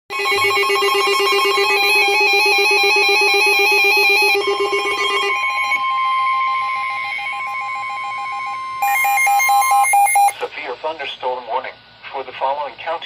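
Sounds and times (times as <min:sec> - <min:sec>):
rapid pulsing beep: 0:00.1 - 0:10.4
steady alarm tone: 0:00.1 - 0:10.4
warbling electronic alert: 0:00.1 - 0:10.4.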